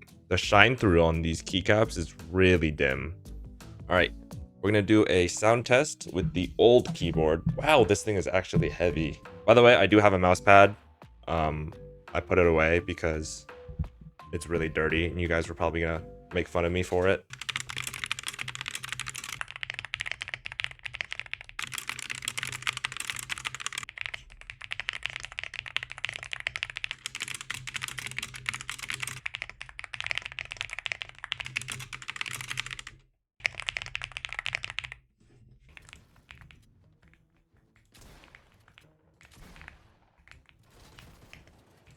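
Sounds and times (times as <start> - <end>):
fast typing on plastic keyboard: 17.2 - 37.9.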